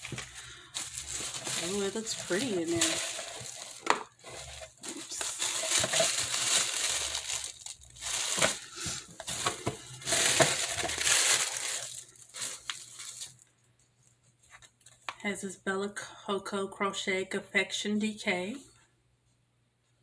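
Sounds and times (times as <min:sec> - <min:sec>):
paper packing material rustling: 0:00.0 - 0:13.4.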